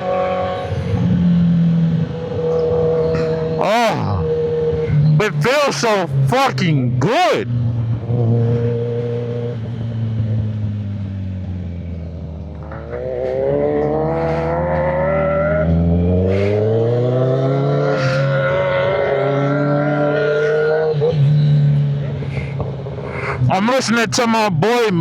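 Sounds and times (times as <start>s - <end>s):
motorcycle engine accelerating: 7.6s - 20.0s.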